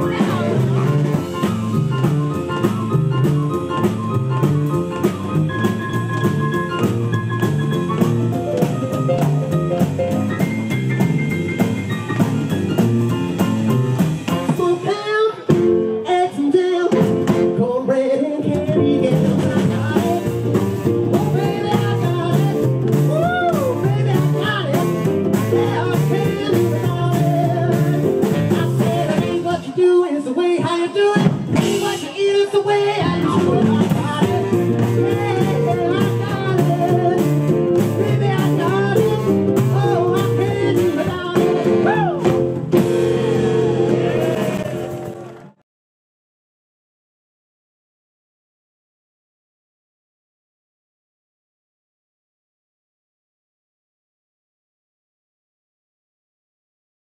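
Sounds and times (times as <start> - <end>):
live rock band playing: 0.0 - 29.8, 31.2 - 45.6.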